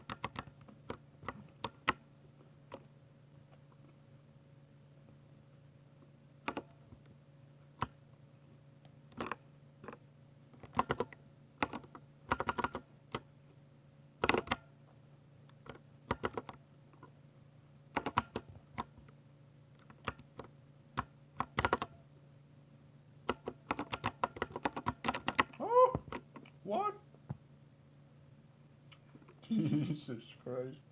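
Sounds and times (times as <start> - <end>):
faint low hum: 0.0 - 30.9
mechanical keyboard key clicks: 18.0 - 18.9, 19.9 - 21.9, 23.3 - 25.5.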